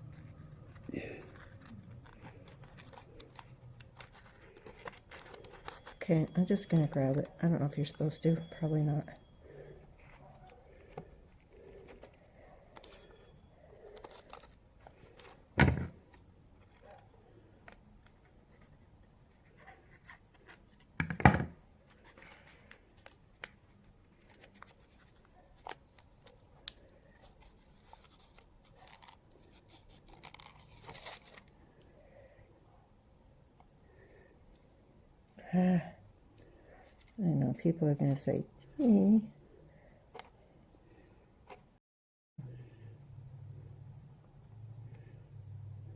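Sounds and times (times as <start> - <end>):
handling materials on a table: 0.0 - 35.4, 36.2 - 37.2.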